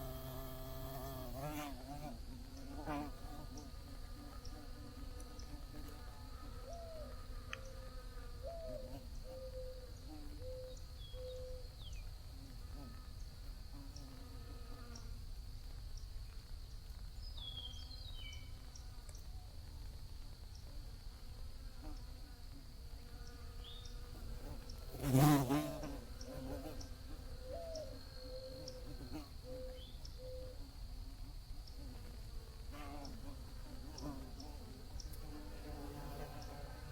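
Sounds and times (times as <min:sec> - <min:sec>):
bees buzzing: 0:00.0 - 0:08.2
bird cooing: 0:08.4 - 0:11.6, 0:27.4 - 0:28.8, 0:29.4 - 0:30.6.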